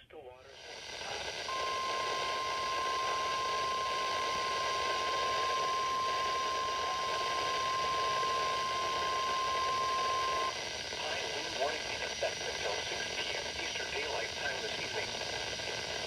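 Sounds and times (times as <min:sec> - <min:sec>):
radio hiss: 0:00.0 - 0:16.0
steady alarm tone: 0:00.7 - 0:11.0.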